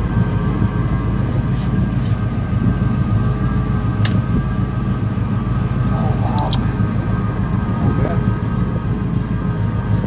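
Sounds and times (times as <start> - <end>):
boat engine rumbling: 0.0 - 10.0
faint steady whine: 0.0 - 10.0.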